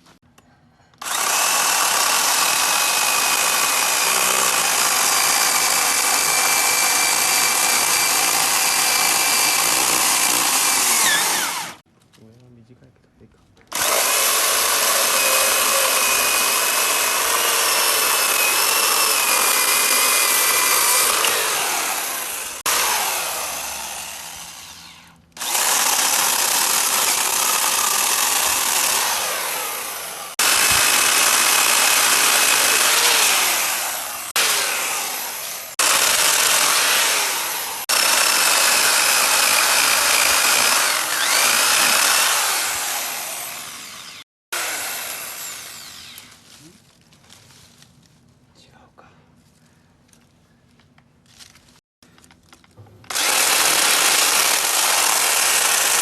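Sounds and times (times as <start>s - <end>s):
electric chainsaw sawing wood: 1.0s - 11.8s, 13.7s - 46.7s, 53.1s - 56.0s.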